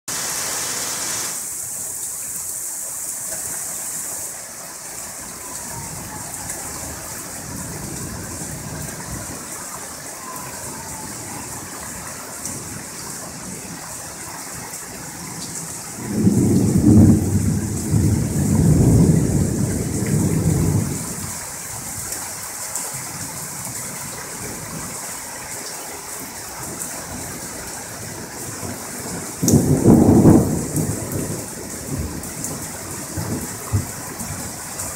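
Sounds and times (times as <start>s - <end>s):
steady rain falling: 0.1s - 34.9s
rolling thunder: 15.1s - 21.5s, 28.0s - 34.9s.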